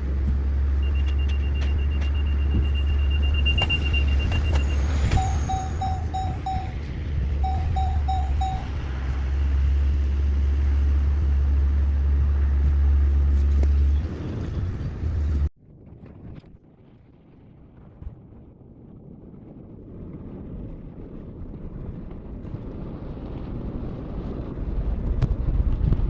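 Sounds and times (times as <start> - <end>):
truck engine rumble: 0.0 - 26.0
quick electronic beeps: 0.8 - 6.8, 7.4 - 8.8.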